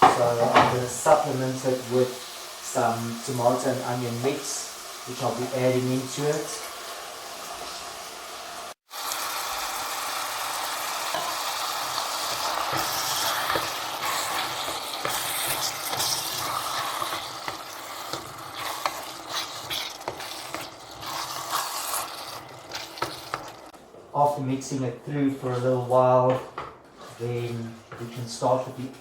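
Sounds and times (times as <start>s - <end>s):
meat sizzling in a pan: 0.0s - 23.8s
spoon scraping against pan: 11.1s - 23.7s.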